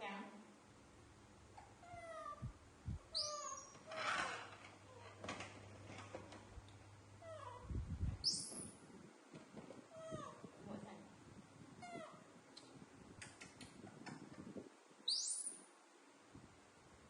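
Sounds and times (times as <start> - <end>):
shrill high-pitched animal cries: 3.1 - 4.4
young animals squeaking: 3.1 - 5.0, 7.2 - 8.8, 15.1 - 15.6.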